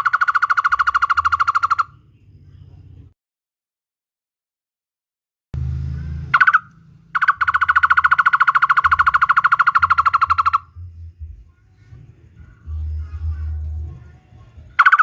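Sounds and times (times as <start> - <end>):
bird calling rapid notes: 0.0 - 2.0, 5.9 - 10.8, 14.7 - 15.0
low hum: 5.6 - 15.0.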